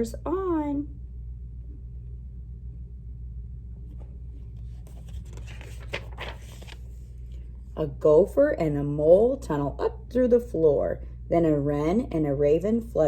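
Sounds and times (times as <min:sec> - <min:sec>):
low electrical hum: 0:00.0 - 0:13.0
paper page turning: 0:03.9 - 0:07.2.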